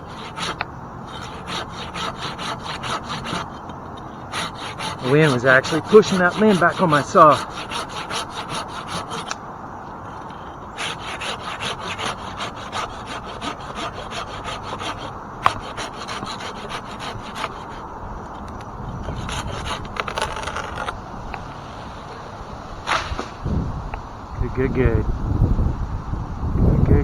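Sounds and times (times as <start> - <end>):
handsaw cutting wood: 0.0 - 9.4, 10.1 - 17.8, 19.0 - 20.9.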